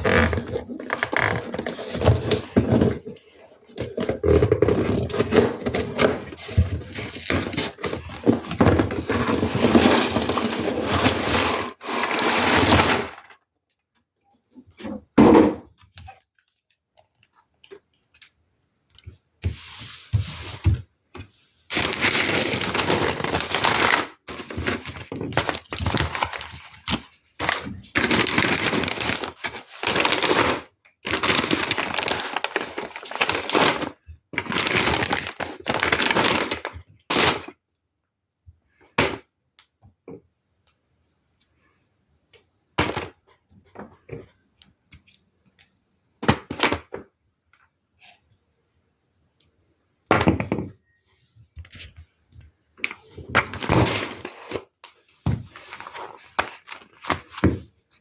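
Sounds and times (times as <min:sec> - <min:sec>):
plastic bags rustling: 0:00.0 - 0:13.4, 0:21.7 - 0:37.5
plastic pieces rattling: 0:07.4 - 0:13.4.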